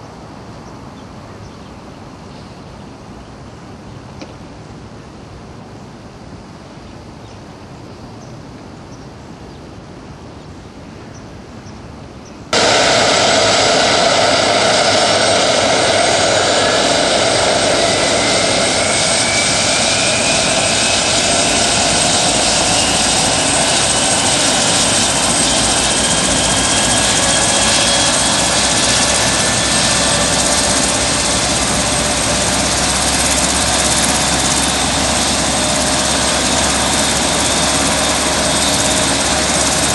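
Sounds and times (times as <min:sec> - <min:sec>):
helicopter turbines and rotor: 0:12.5 - 0:39.9.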